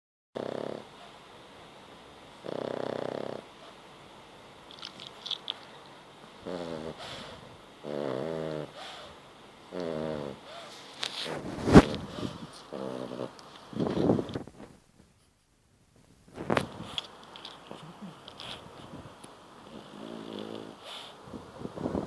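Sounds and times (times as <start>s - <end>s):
person snoring: 6.5s - 8.8s, 9.7s - 10.5s, 19.7s - 21.0s.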